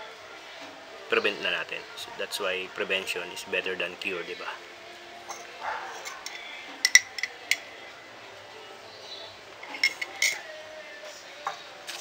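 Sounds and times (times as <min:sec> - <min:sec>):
glass clinking: 0:05.3 - 0:07.8, 0:09.6 - 0:10.5.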